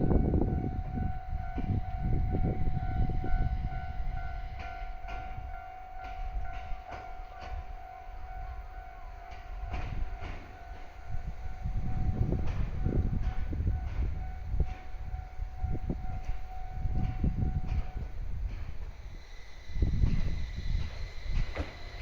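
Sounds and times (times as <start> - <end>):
level-crossing bell ringing: 0.0 - 12.2
electric train rumbling past: 0.0 - 22.0
train wheels clacking: 0.0 - 22.0.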